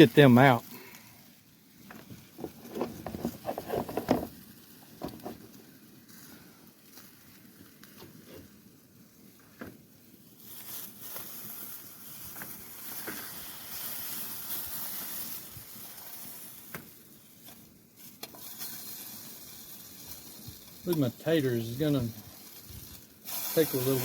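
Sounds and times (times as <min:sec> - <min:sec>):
food sizzling in frying pan: 0:10.3 - 0:24.0.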